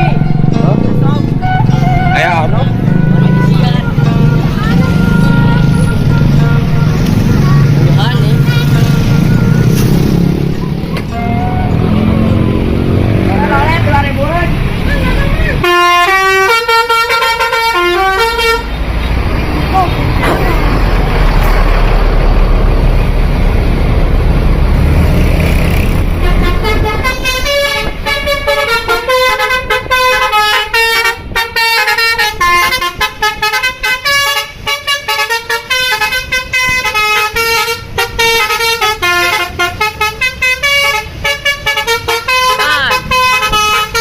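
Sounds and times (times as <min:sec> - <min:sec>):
bus rumbling by: 0:00.0 - 0:44.0
bus horn playing fast tune: 0:01.4 - 0:07.4, 0:08.2 - 0:10.1, 0:11.1 - 0:12.4, 0:14.9 - 0:18.8, 0:25.9 - 0:44.0.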